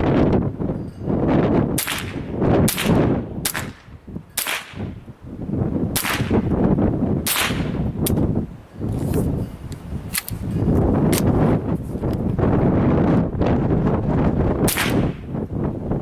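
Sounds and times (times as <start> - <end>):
rifle shots: 1.8 - 3.8, 4.4 - 4.8, 6.0 - 6.4, 7.3 - 7.8, 14.7 - 15.2.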